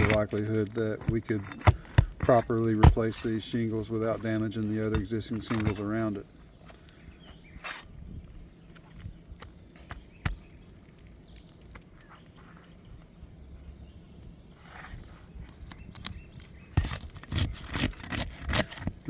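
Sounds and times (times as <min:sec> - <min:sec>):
roof shingles clicking and scraping: 0:00.0 - 0:07.8, 0:15.7 - 0:19.0.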